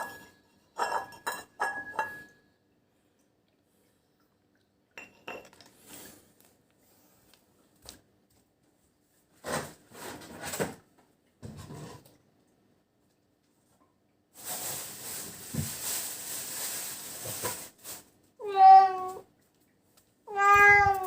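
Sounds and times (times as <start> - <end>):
dishes and utensils clinking: 0.0 - 2.4, 5.0 - 5.8.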